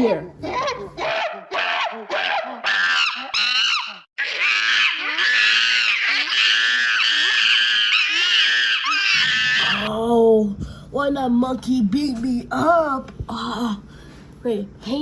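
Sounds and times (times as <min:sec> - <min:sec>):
long high scream: 0:02.7 - 0:09.9.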